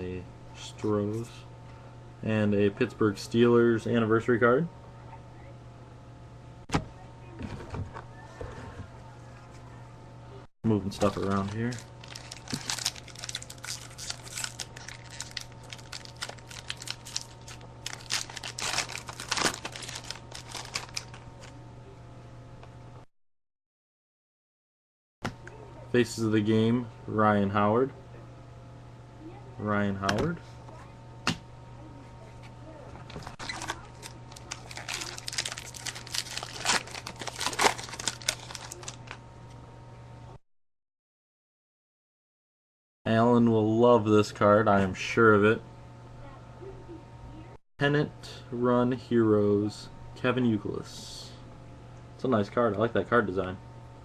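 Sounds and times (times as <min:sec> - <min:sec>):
low hum: 0:00.0 - 0:23.1
steady low hum: 0:00.0 - 0:23.1, 0:25.3 - 0:40.4, 0:43.1 - 0:54.0
foil wrappers crinkling: 0:10.8 - 0:21.6, 0:33.1 - 0:39.2.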